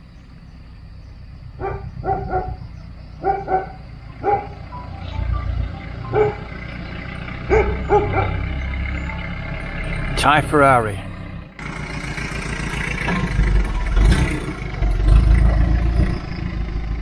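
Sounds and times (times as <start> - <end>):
truck engine rumble: 0.0 - 17.0
dog barking: 1.6 - 4.6, 6.1 - 6.5, 7.5 - 8.4.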